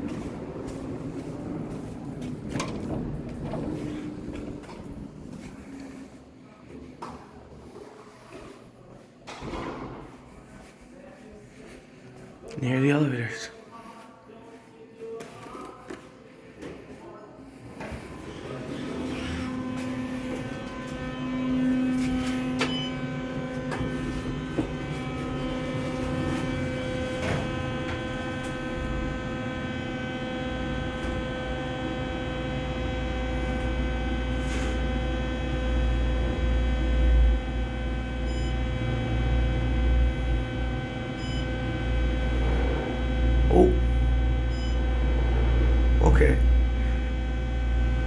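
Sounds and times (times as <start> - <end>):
elevator machinery hum: 0.0 - 13.4, 15.5 - 48.0.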